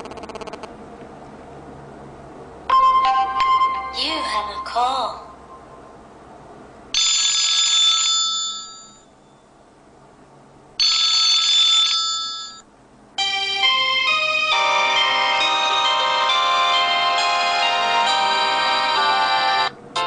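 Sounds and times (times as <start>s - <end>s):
melodic ringtone: 2.7s - 4.7s, 13.2s - 20.0s
telephone bell ringtone: 7.0s - 9.2s, 10.8s - 20.0s.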